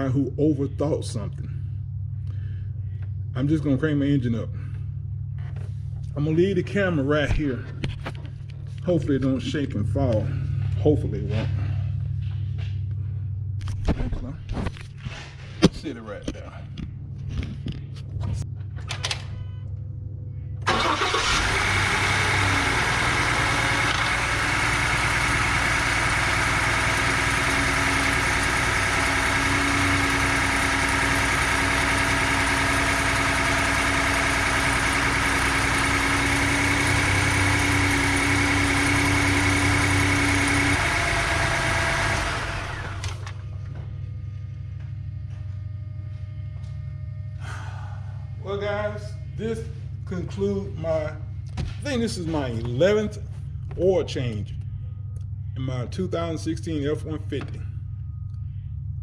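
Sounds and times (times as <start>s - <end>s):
truck engine starting and idling: 20.5s - 48.9s.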